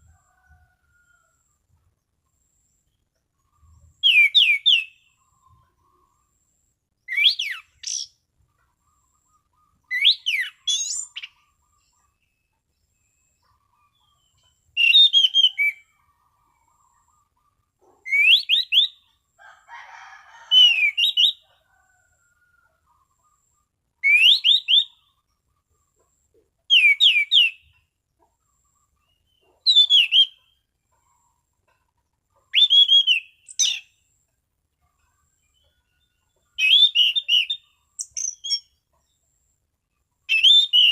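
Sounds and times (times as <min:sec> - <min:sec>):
thrush singing whistled phrases: 0:04.0 - 0:05.0, 0:07.1 - 0:08.1, 0:18.1 - 0:19.0, 0:24.0 - 0:25.0, 0:26.7 - 0:27.7, 0:32.6 - 0:33.9, 0:36.6 - 0:38.7, 0:40.3 - 0:40.9.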